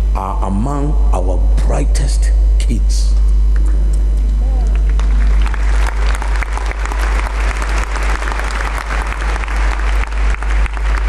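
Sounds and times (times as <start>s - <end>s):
low electrical hum: 0.0s - 11.0s
crowd clapping: 4.5s - 11.0s.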